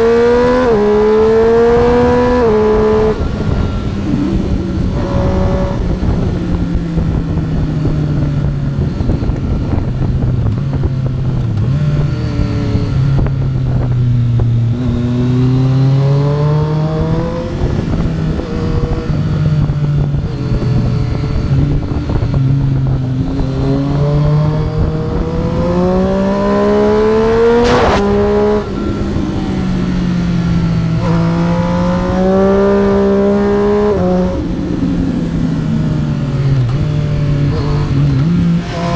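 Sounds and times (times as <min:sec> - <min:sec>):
motorcycle engine accelerating: 0:00.0 - 0:38.9
steady rush of noise: 0:27.5 - 0:28.9.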